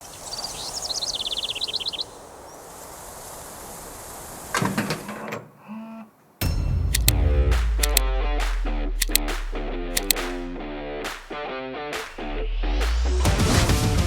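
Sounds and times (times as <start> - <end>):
bird chirping: 0.0 - 2.7
outdoor hiss: 0.0 - 5.6
music: 6.4 - 14.0.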